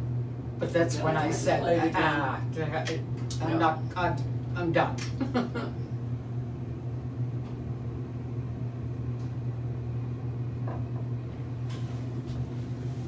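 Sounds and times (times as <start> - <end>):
elevator hum: 0.0 - 13.0.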